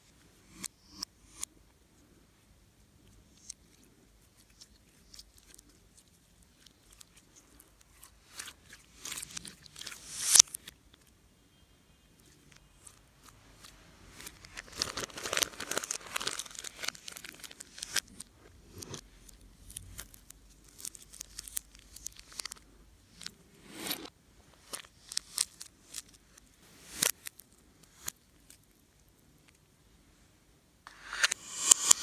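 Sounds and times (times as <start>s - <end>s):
slime squishing and crackling: 14.3s - 22.6s.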